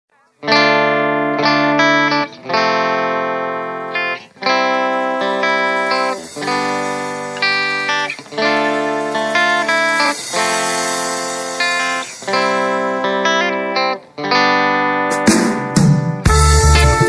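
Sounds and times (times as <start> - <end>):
reggae guitar chords ringing: 0.1 - 17.0.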